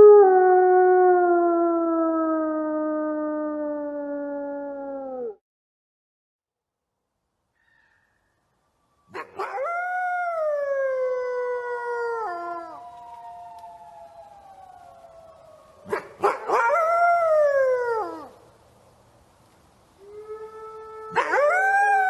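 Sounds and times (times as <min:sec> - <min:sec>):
wolf howling: 0:00.0 - 0:05.4, 0:20.0 - 0:22.0.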